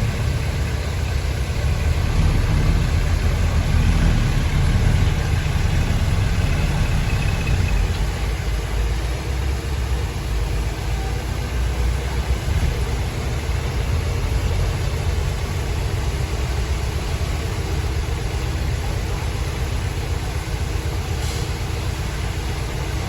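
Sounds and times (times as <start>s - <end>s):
heavy diesel engine rumbling: 0.0s - 23.0s.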